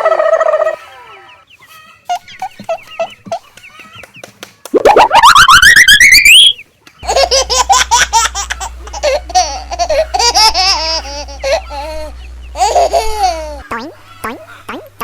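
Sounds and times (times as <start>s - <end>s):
rising whistle glide: 4.8s - 6.6s
high-pitched sped-up giggling: 4.8s - 15.0s
steady low hum: 7.0s - 15.0s.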